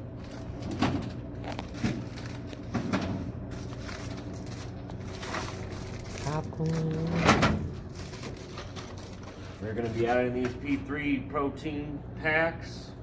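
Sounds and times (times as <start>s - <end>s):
steady low hum: 0.0s - 13.0s
plastic packets crinkling: 1.4s - 2.7s, 3.4s - 7.1s, 7.7s - 10.6s.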